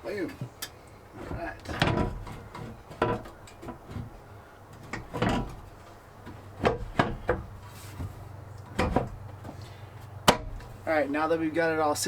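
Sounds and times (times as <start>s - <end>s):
sharp metal clunks: 8.7s - 9.6s, 10.2s - 10.7s.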